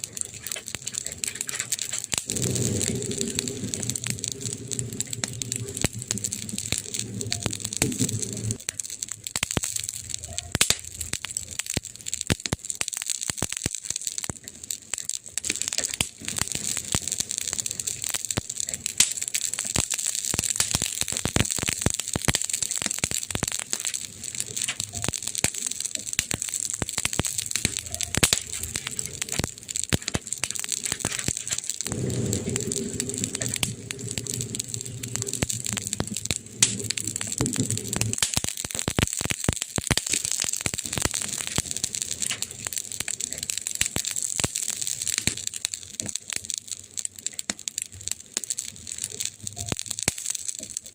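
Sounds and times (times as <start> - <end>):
fire hiss: 0.0 - 50.8
campfire crackling and popping: 0.0 - 50.9
low rumble: 2.0 - 8.7, 26.8 - 38.2.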